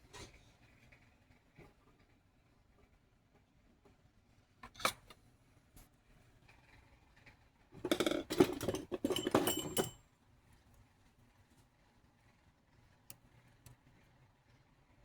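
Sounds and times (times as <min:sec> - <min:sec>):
small metal objects clinking: 0:07.9 - 0:10.0
metallic ring: 0:09.0 - 0:10.0.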